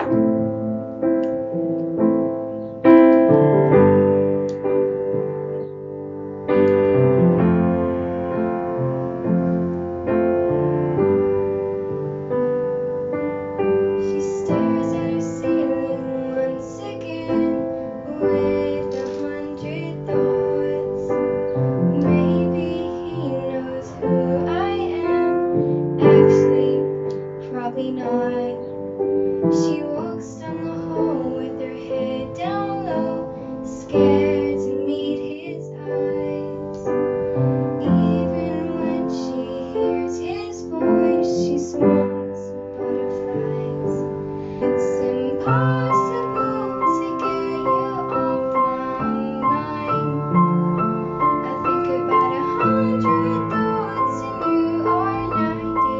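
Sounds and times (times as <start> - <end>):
piano chords: 0.0 - 55.9
girl singing: 14.0 - 37.1, 37.8 - 55.9.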